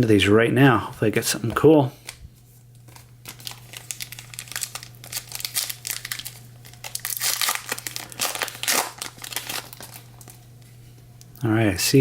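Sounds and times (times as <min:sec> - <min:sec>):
steady low hum: 0:00.0 - 0:12.0
foil wrappers crinkling and tearing: 0:02.8 - 0:10.7.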